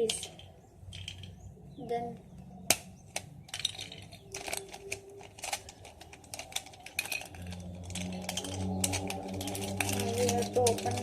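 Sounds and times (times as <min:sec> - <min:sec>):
low steady hum: 0:00.0 - 0:11.0
plastic cube pieces clicking: 0:02.7 - 0:11.0.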